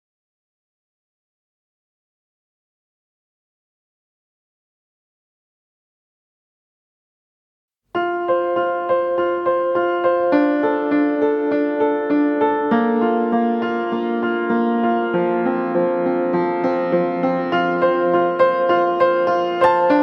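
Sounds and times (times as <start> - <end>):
piano tune: 8.0 - 20.0.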